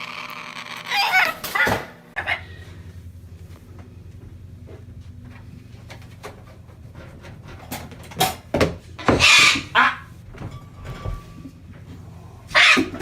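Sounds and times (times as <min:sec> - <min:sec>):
bird screeching: 0:00.6 - 0:02.4, 0:09.0 - 0:10.1, 0:12.5 - 0:13.0.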